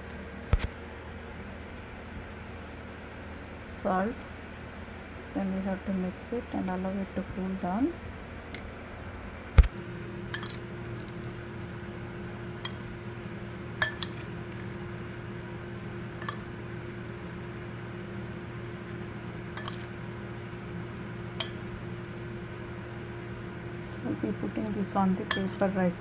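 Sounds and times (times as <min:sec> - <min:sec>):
steady low hum: 0:00.0 - 0:26.0
spoon clinking against bowl: 0:10.3 - 0:10.7, 0:12.6 - 0:14.8, 0:15.8 - 0:22.7, 0:25.3 - 0:25.7.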